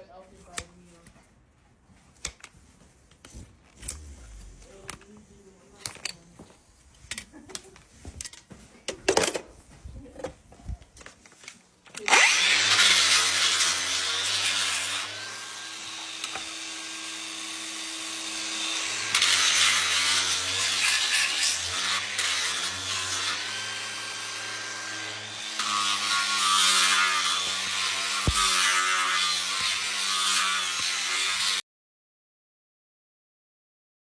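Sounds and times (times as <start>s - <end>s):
power tool grinding hoof: 3.0s - 8.4s, 12.0s - 31.6s.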